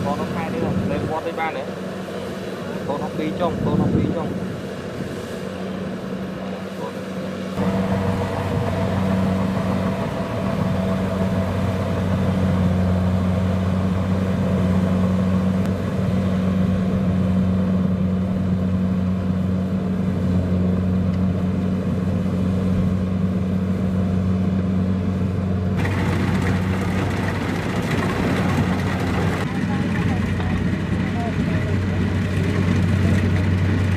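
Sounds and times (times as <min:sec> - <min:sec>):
diesel engine running: 0:00.0 - 0:33.9.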